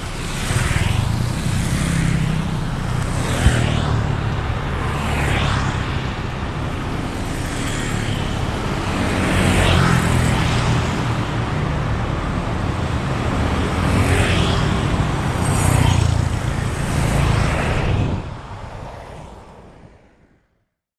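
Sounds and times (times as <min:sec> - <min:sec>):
cars and motorbikes passing: 0:00.0 - 0:20.4.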